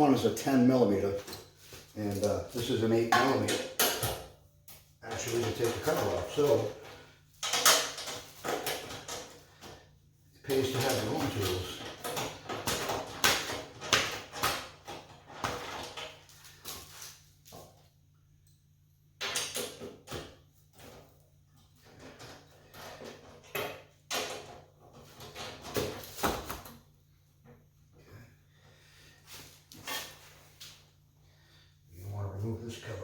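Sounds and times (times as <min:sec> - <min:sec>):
hand tools and metal parts clinking: 0:01.1 - 0:09.8, 0:10.4 - 0:17.1.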